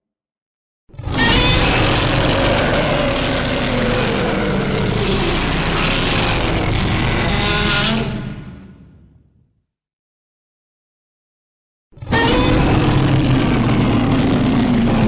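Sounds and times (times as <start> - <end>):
monster roar: 0.9 - 9.0, 12.0 - 15.0.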